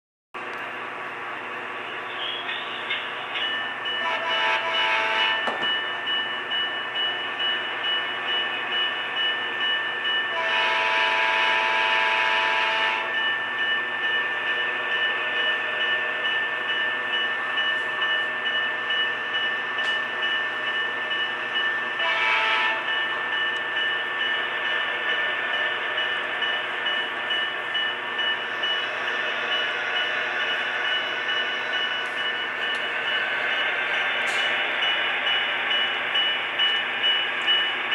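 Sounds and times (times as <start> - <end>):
model locomotive running sound: 0.5 - 37.9
locomotive horn blasts: 4.0 - 5.6, 10.3 - 13.2, 22.0 - 22.9.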